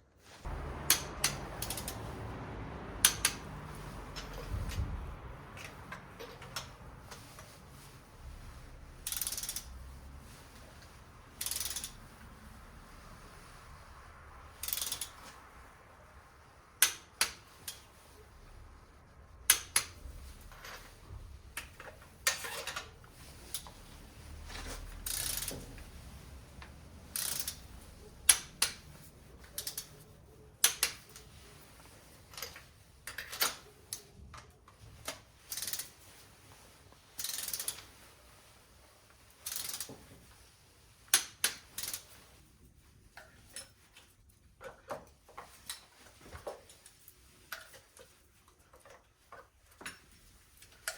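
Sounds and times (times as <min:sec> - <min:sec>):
hand ratchet clicking: 0:00.5 - 0:02.2, 0:03.0 - 0:04.9, 0:09.0 - 0:09.7, 0:11.4 - 0:12.0, 0:14.6 - 0:15.4, 0:16.8 - 0:17.8, 0:19.5 - 0:20.0, 0:25.0 - 0:25.6, 0:27.1 - 0:27.6, 0:29.4 - 0:30.0, 0:35.0 - 0:35.9, 0:37.2 - 0:37.8, 0:39.4 - 0:39.9.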